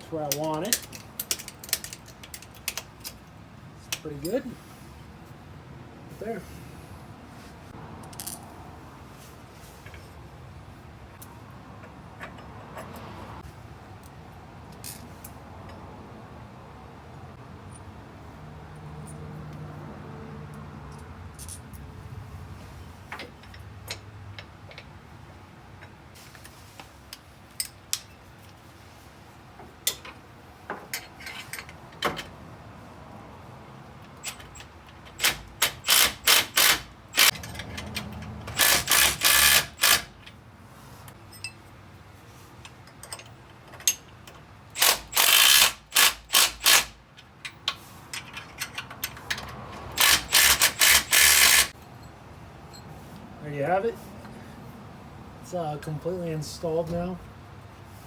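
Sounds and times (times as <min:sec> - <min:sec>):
ratchet wrench clicking: 0:00.3 - 0:03.2, 0:34.2 - 0:40.2, 0:44.8 - 0:51.8.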